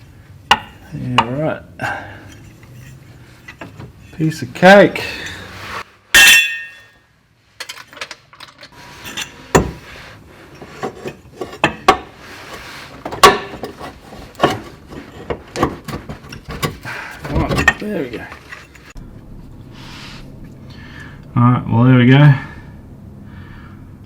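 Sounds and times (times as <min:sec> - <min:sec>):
loud metallic clang: 0:06.2 - 0:07.0
metal tools clinking and knocking: 0:06.2 - 0:07.0, 0:07.6 - 0:09.8, 0:13.0 - 0:19.0.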